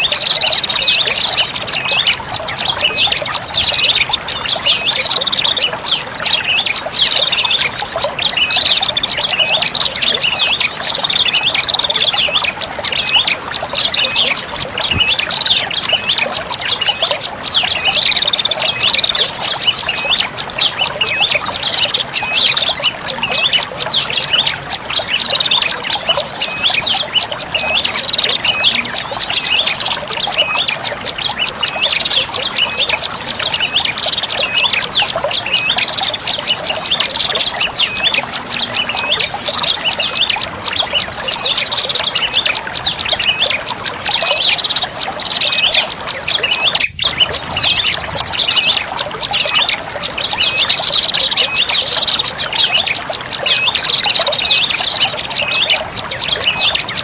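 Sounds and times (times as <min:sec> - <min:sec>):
birds chirping rapidly: 0:00.0 - 0:57.0.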